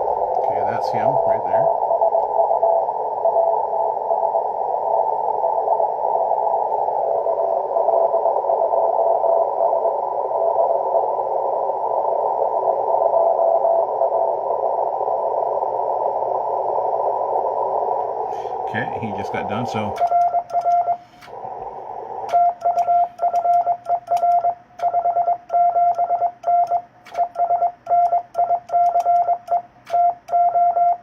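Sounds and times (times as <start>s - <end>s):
radio receiver hiss: 0.0s - 25.5s
morse code tone: 18.7s - 21.2s, 22.3s - 31.0s.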